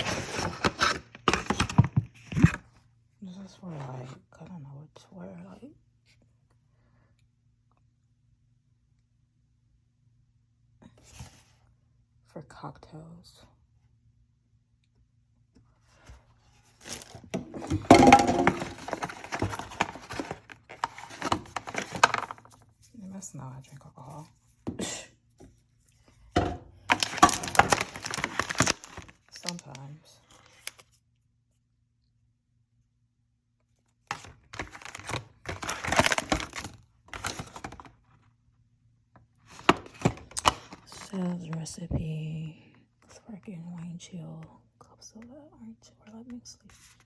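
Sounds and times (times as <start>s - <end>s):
objects knocking and clattering: 17.3s - 20.5s, 26.3s - 28.2s.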